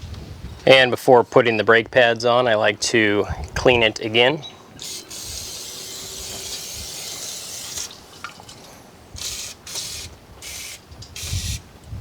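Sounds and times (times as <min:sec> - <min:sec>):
aerosol spray hissing: 0:04.8 - 0:08.0, 0:09.2 - 0:11.6.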